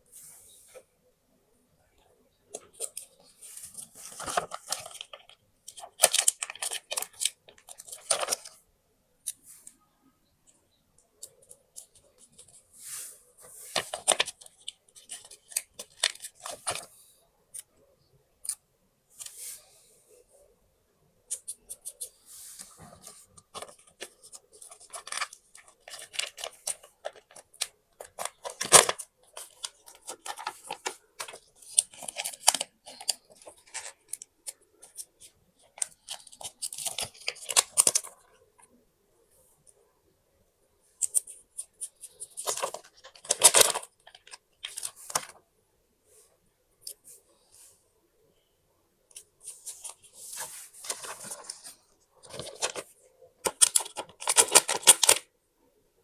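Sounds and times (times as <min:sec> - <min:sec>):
paper rustling: 0:02.5 - 0:08.6, 0:11.3 - 0:16.9, 0:21.3 - 0:38.2, 0:41.0 - 0:45.4, 0:49.1 - 0:55.2.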